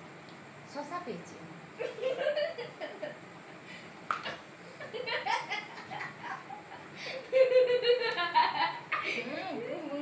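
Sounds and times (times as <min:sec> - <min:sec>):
people chuckling and giggling: 0:04.7 - 0:09.4.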